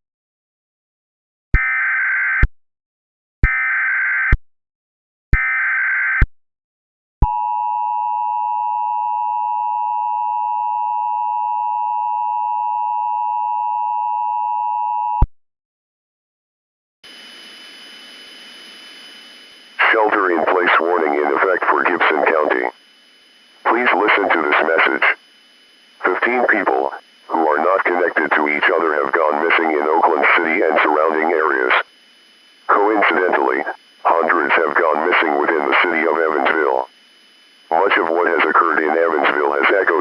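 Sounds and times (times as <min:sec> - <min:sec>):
screechy digital data warble: 0:19.3 - 0:22.8, 0:23.6 - 0:25.2, 0:26.0 - 0:31.9, 0:32.7 - 0:37.0.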